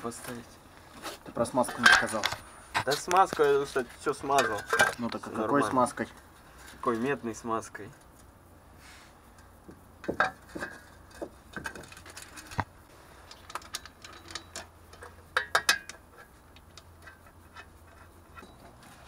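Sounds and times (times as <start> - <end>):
metallic clicks and clinks of tools: 13.2 - 17.7.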